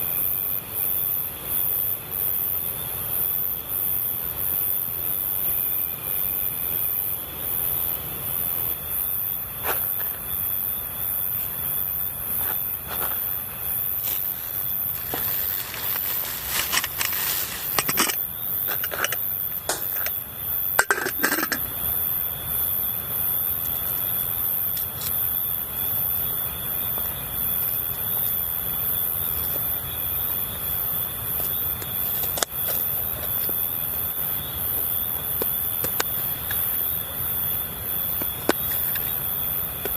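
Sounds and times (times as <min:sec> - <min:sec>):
insects chirring: 0:00.0 - 0:39.9
sharp clicks and knocks: 0:15.0 - 0:20.2.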